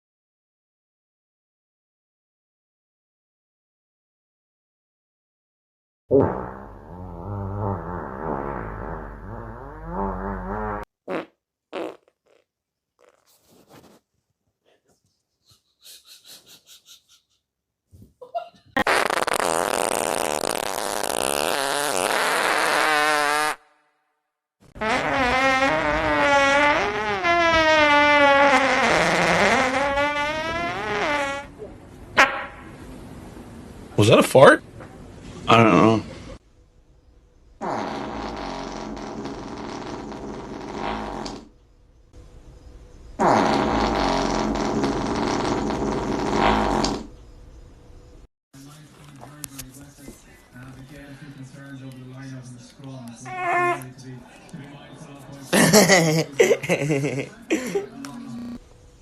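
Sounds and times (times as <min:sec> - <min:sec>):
long loud fart: 0:06.1 - 0:13.3, 0:18.8 - 0:23.9, 0:24.7 - 0:32.7, 0:37.6 - 0:41.5, 0:43.2 - 0:47.2, 0:53.3 - 0:53.8.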